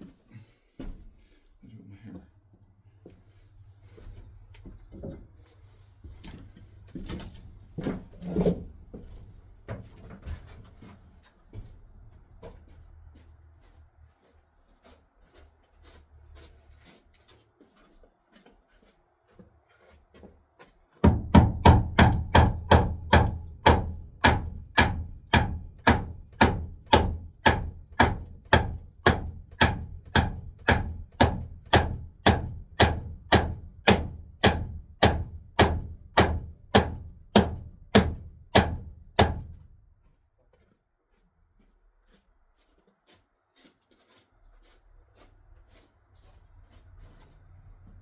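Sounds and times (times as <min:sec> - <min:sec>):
hammer striking wood: 0:21.0 - 0:39.6.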